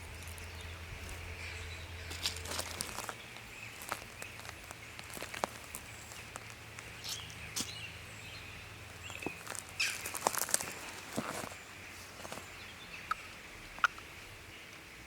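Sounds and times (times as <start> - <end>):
campfire crackling and snapping: 2.1 - 7.7.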